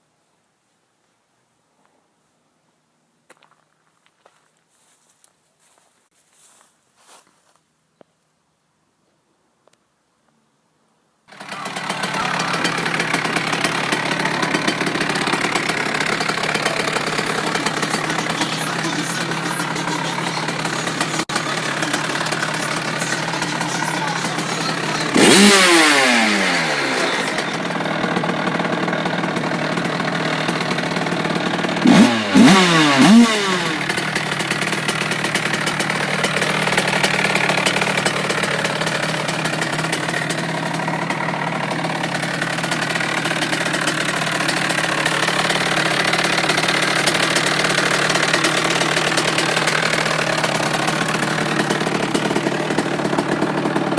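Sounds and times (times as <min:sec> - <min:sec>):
two-stroke engine idling and revving: 0:11.3 - 0:53.9.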